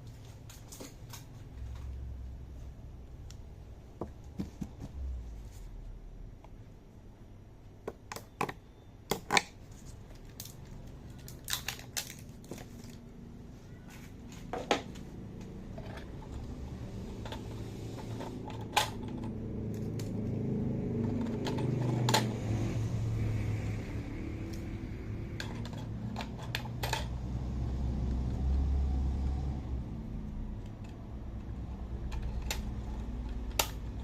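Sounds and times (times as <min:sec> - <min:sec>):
low hum: 0:14.9 - 0:34.0.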